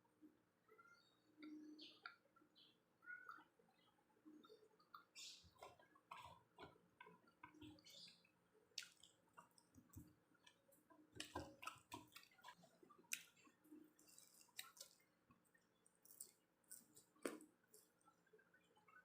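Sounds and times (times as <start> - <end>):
person chewing fries: 4.4 - 19.0.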